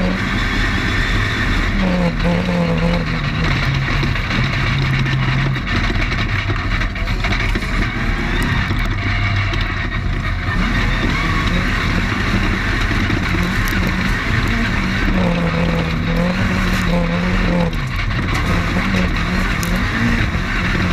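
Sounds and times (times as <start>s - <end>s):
race car engine: 0.0s - 20.9s
loud noisy rush: 10.0s - 20.9s.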